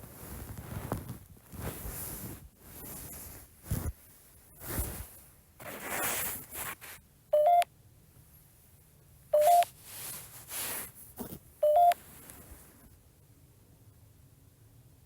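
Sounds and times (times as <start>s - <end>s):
soft rustling: 0.0s - 7.0s, 9.4s - 13.0s.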